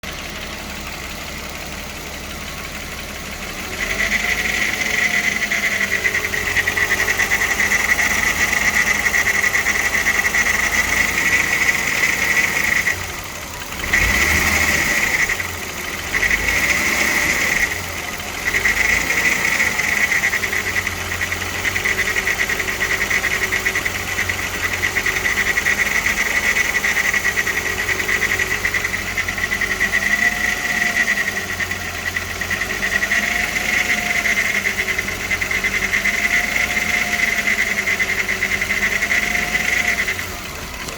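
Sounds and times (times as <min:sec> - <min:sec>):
car engine running: 0:00.0 - 0:40.9.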